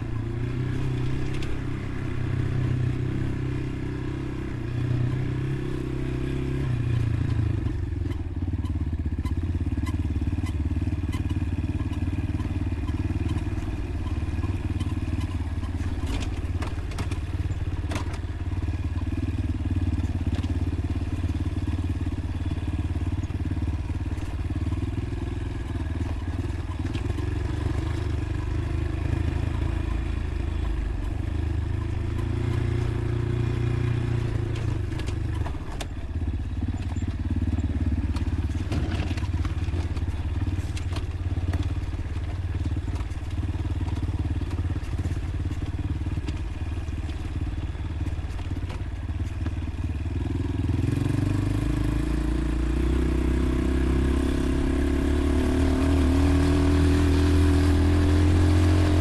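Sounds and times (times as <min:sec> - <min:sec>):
motorcycle engine running: 0:00.0 - 0:59.0
light clicks and clatter: 0:11.2 - 0:18.3, 0:34.5 - 0:36.1, 0:38.0 - 0:47.4.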